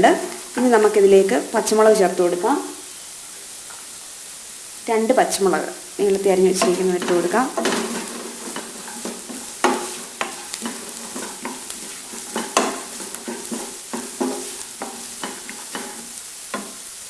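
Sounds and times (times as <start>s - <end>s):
chillies sizzling in hot oil: 0.0s - 17.0s
spoon scraping a pan: 6.0s - 17.0s.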